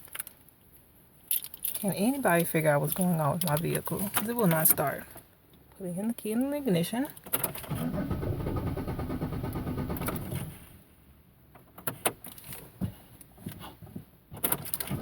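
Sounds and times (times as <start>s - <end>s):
starter cranking engine: 7.5s - 10.5s.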